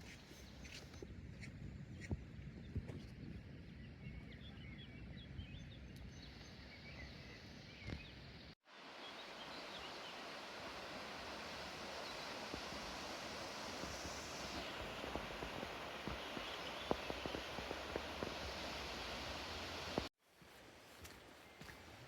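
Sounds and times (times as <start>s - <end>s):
small birds chirping: 0.0s - 20.1s
steady rushing noise: 8.8s - 20.1s.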